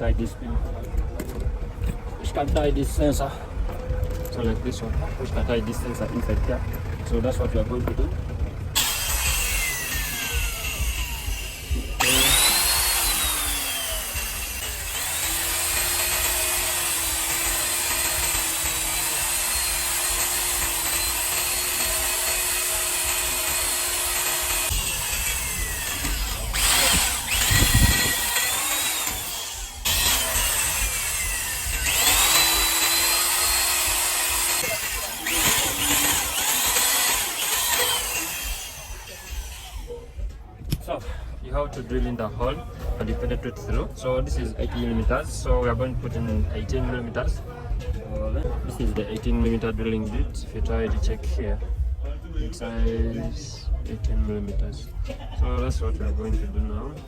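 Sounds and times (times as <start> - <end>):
power tool motor spinning: 7.8 - 40.0.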